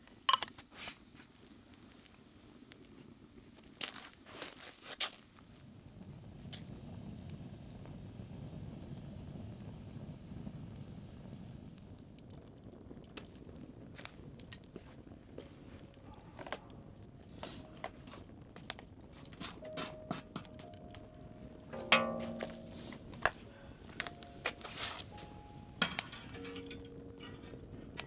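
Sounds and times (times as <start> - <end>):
fire crackling and popping: 0.0 - 28.0
low rushing of fire: 5.6 - 28.0.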